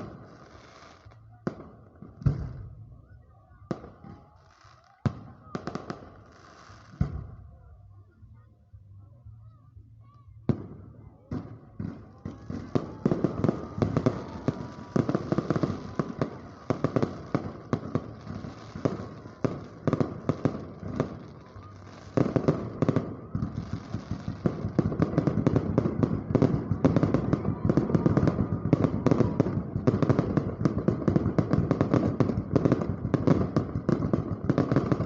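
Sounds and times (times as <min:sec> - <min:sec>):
fireworks bangs and crackles: 0:00.0 - 0:08.2, 0:10.2 - 0:35.0.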